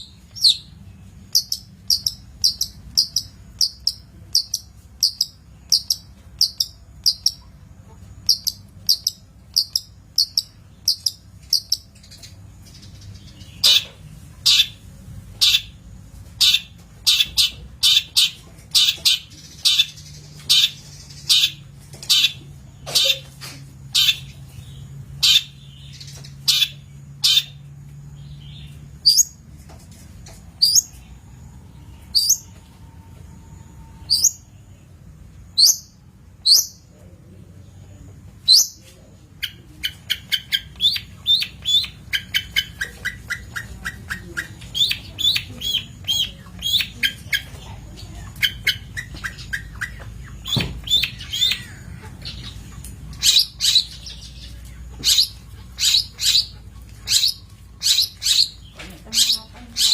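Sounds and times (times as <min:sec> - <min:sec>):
bird sharp calls: 0:48.3 - 0:59.9.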